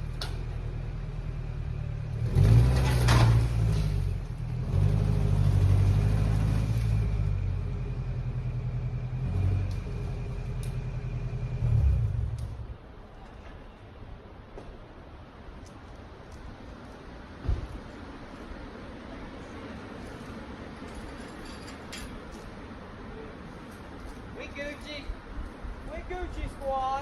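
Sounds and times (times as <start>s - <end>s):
vehicle engine rumbling and revving: 0.0s - 12.9s.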